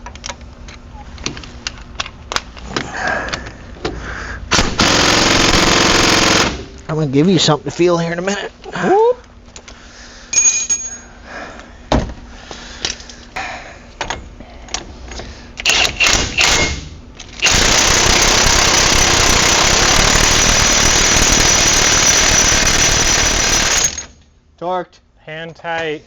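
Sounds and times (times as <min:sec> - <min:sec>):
impact wrench hammering: 0:15.7 - 0:24.1.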